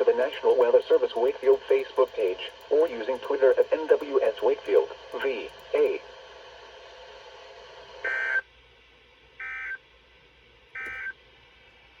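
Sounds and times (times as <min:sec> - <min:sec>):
faint radio hiss: 0:00.0 - 0:09.3.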